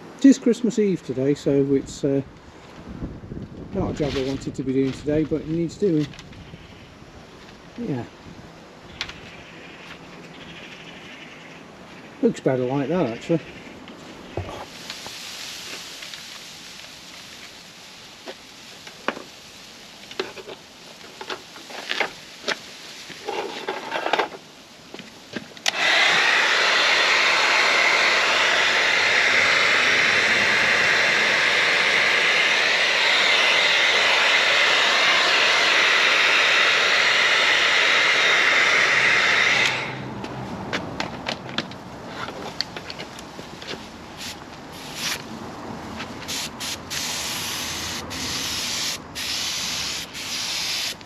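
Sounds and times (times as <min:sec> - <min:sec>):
compressed air hissing: 0:25.7 - 0:40.1, 0:44.2 - 0:45.3, 0:46.2 - 0:51.0
tape and paper crackling and tearing: 0:44.2 - 0:45.3.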